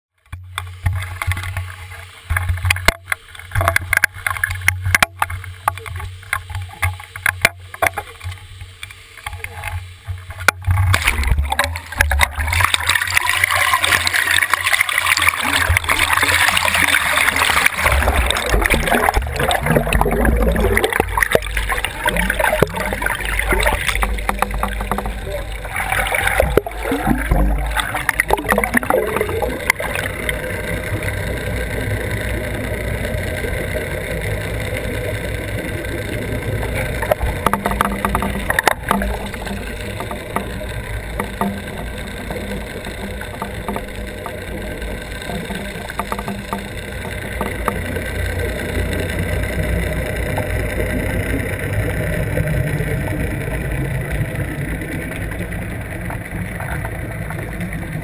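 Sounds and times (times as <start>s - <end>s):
muffled boat motor: 0.1s - 58.0s
rushing water: 0.1s - 58.0s
knocks and rattles: 15.2s - 29.9s, 36.9s - 44.4s, 45.3s - 47.8s.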